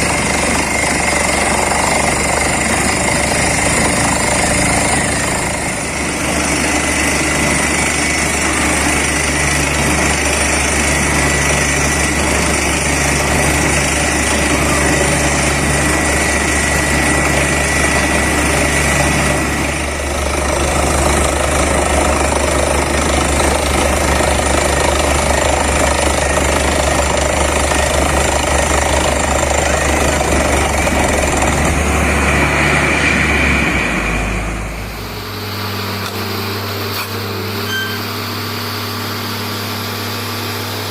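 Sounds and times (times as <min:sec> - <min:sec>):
drill rig rapid hammering: 0:00.0 - 0:32.1
engine and air compressor running: 0:00.0 - 0:40.9.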